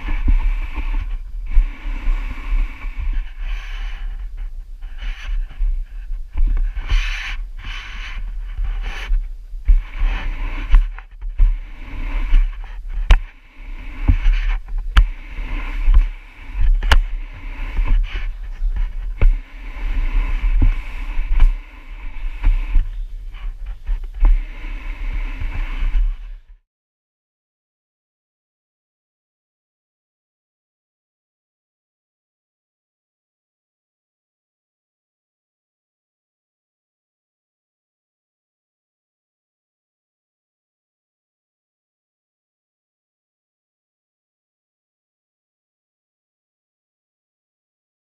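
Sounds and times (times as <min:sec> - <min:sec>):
rubbing and scraping strokes: 0:00.0 - 0:26.6.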